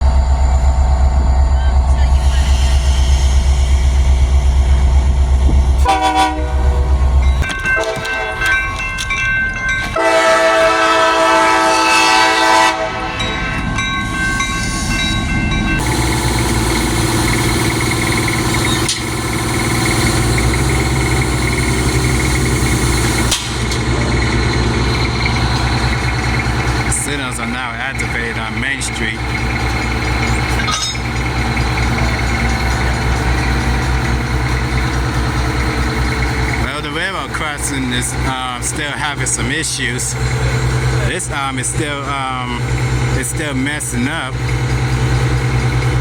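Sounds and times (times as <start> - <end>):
diesel engine running: 0.0 - 9.3, 15.2 - 46.0
locomotive horn blasts: 5.8 - 7.1, 7.7 - 8.6, 10.0 - 13.5.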